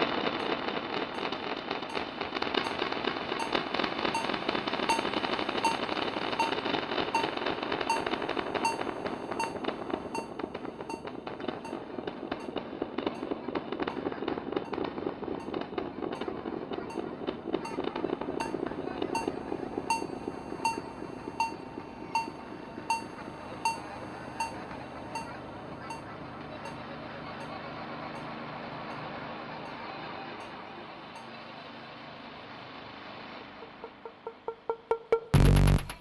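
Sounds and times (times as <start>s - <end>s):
crackling hissing electronic noise: 0.0s - 31.3s, 35.4s - 36.0s
short electronic blips: 3.4s - 11.8s, 34.2s - 36.0s.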